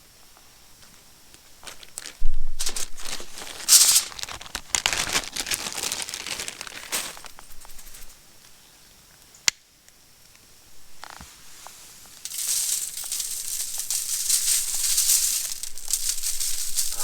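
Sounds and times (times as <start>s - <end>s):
material crinkling and rustling: 1.6s - 8.2s, 11.0s - 17.0s.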